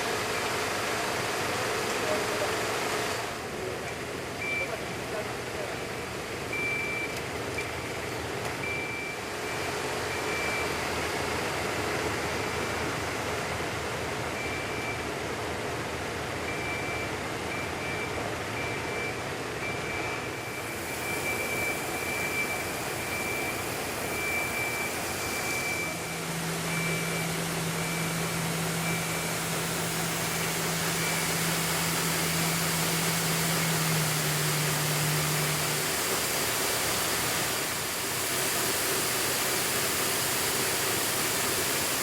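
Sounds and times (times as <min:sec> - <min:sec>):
steady rushing water pump: 0:00.0 - 0:03.4, 0:20.6 - 0:42.0.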